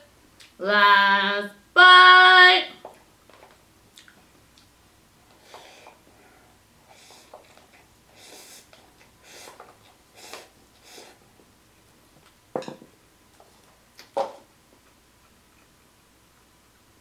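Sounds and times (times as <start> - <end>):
person breathing sharply through nose: 8.1 - 11.2
tableware clinking: 12.6 - 12.9.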